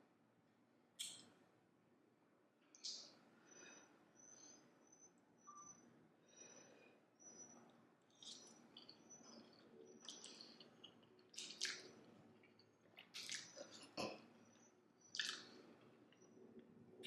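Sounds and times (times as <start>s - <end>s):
wet chewing and mouth smacking: 8.1s - 14.4s, 15.0s - 17.0s.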